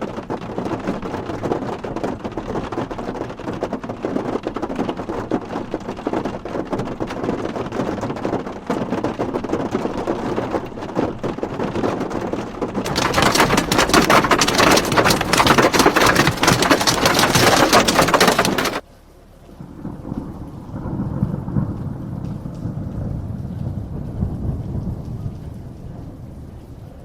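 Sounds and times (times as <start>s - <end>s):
heavy hail clattering: 12.8s - 18.8s.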